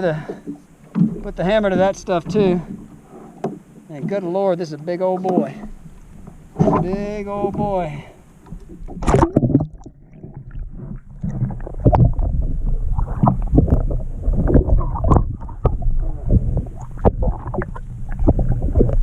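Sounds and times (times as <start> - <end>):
knocks and clunks on kayak: 0.0 - 19.0
water splashing: 0.0 - 19.0
wind rumble on microphone: 8.5 - 19.0.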